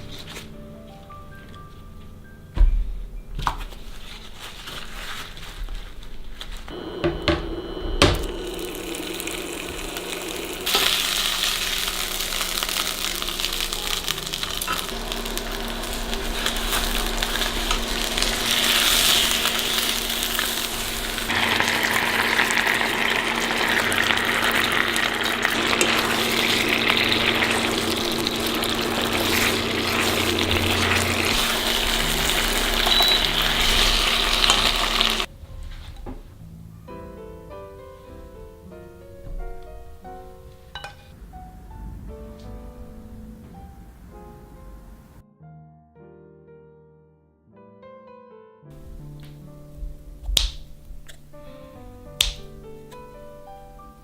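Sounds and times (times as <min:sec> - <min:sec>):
chicken sizzling in a pan: 0:06.7 - 0:35.3.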